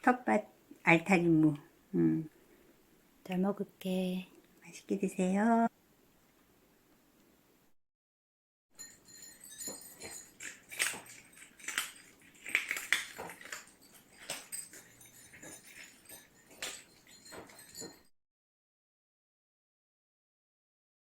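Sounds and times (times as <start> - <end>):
cats crunching and chewing food: 8.8 - 18.0.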